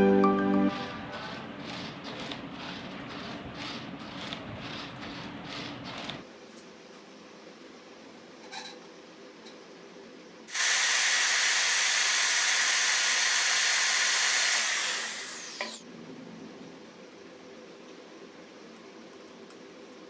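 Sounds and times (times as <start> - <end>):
electric blower rushing air: 0.0 - 6.2, 10.5 - 15.8.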